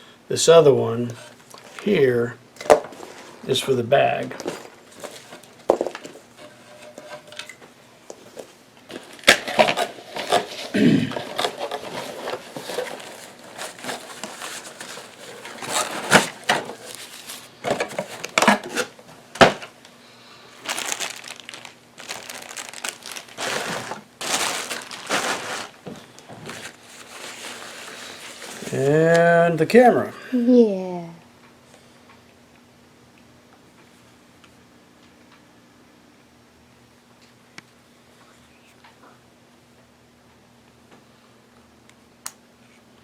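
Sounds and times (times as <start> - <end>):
plastic wrap crinkling: 9.0 - 18.8, 20.5 - 29.2.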